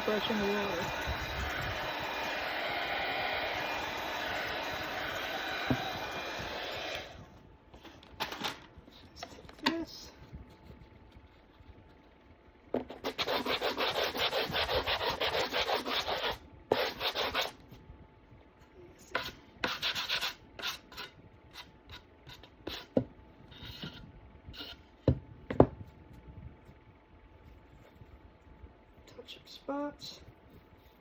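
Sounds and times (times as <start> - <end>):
sandpaper rasping on wood: 0.1 - 1.2, 13.0 - 17.5.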